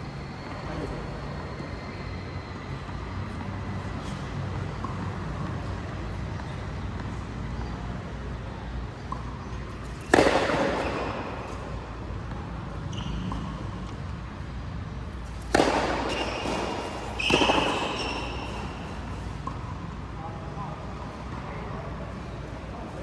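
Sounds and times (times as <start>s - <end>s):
racket ball strikes: 9.0s - 14.2s, 15.1s - 19.9s
high squeak: 16.1s - 19.0s.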